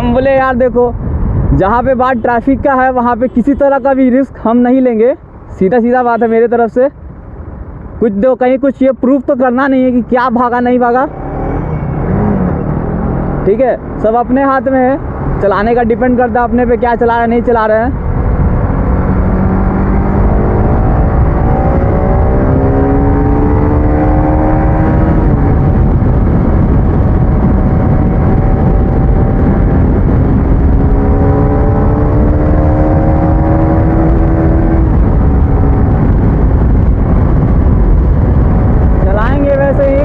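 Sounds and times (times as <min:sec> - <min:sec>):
wind rumble: 0:00.0 - 0:40.0
motorcycle engine accelerating: 0:11.0 - 0:16.7, 0:17.9 - 0:40.0.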